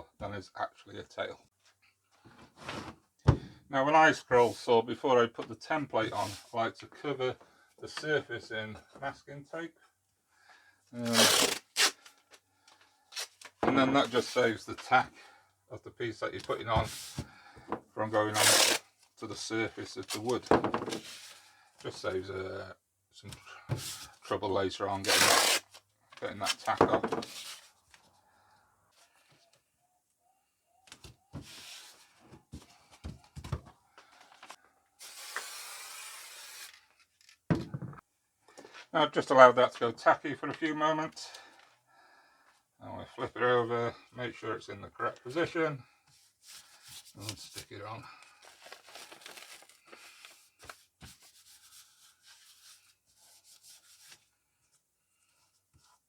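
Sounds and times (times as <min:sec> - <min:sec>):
hands rubbing paper: 0:11.1 - 0:11.9, 0:18.4 - 0:18.8, 0:25.1 - 0:25.6
handling knocks and rustles: 0:26.6 - 0:28.0.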